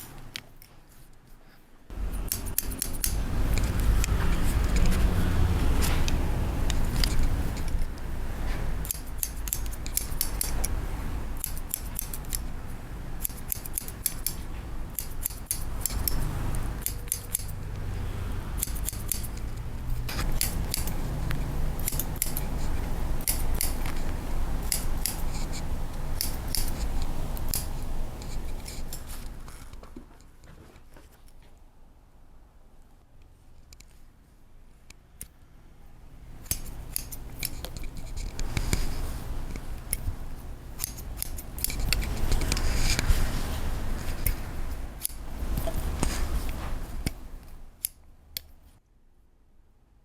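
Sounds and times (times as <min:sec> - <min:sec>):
steady low rumble: 0:01.9 - 0:11.4
scissors snipping hair: 0:02.0 - 0:07.9, 0:08.8 - 0:10.8, 0:11.4 - 0:12.6, 0:13.2 - 0:29.3, 0:36.4 - 0:40.2, 0:40.8 - 0:43.2, 0:44.1 - 0:45.9.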